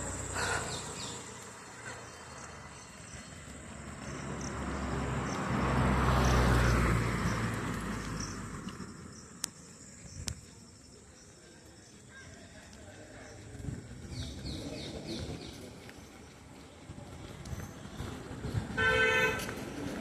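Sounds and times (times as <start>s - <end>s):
vehicle driving past: 0.0s - 9.2s.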